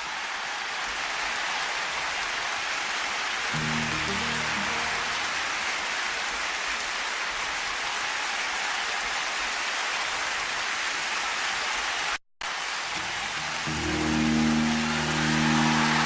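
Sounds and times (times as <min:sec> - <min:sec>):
crowd applauding: 0:00.0 - 0:16.0.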